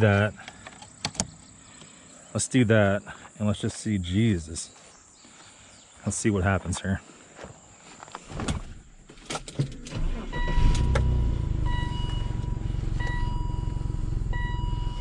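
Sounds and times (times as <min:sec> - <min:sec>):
car engine starting and idling: 0:08.8 - 0:15.0
repeating electronic beep: 0:10.3 - 0:15.0.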